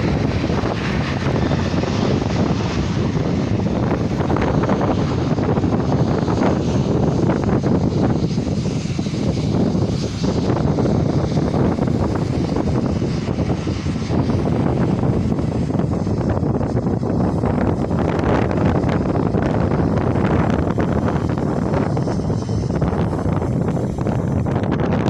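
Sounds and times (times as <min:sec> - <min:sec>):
jet engines roaring: 0:00.0 - 0:25.0.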